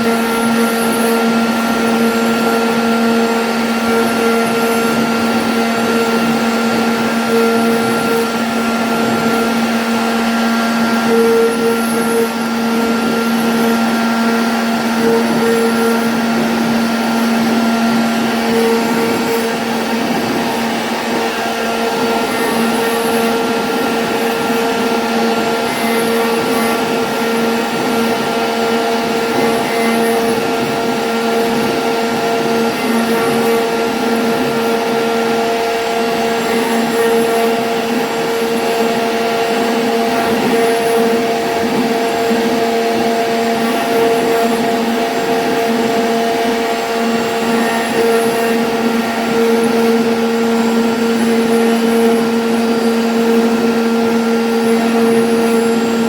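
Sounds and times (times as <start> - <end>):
router bit cutting hiss: 0.0 - 56.0
router spindle motor whine: 0.0 - 56.0.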